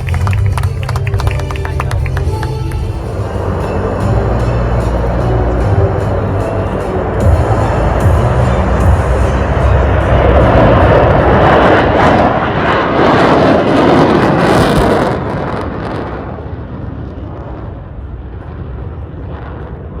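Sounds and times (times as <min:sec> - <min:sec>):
jet fighter passing low: 0:06.6 - 0:20.0.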